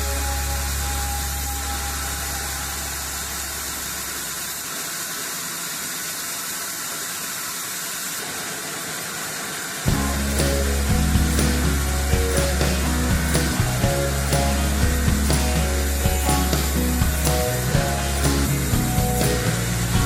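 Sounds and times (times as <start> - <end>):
low motor hum: 0.0 - 4.6, 9.9 - 20.0
sawmill machinery hissing: 0.0 - 20.0.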